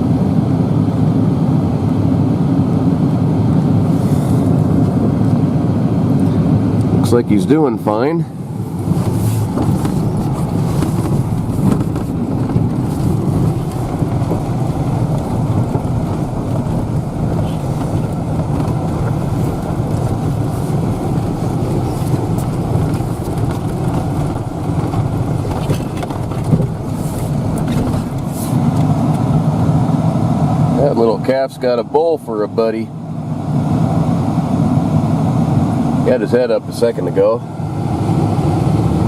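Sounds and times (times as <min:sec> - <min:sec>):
vehicle engine rumble: 0:00.0 - 0:39.0
vehicle knocking over bumps: 0:08.7 - 0:29.0.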